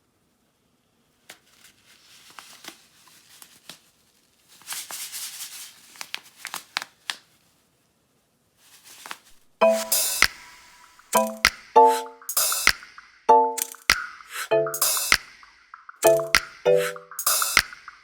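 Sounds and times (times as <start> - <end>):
packaging crinkling and tearing: 1.3 - 7.6
loud music: 9.6 - 18.0.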